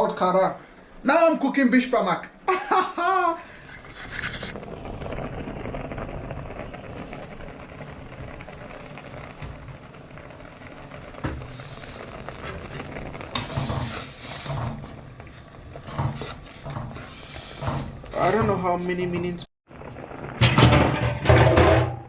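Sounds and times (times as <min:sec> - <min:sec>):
pot boiling hiss: 0:00.0 - 0:22.0
clatter: 0:20.3 - 0:22.0.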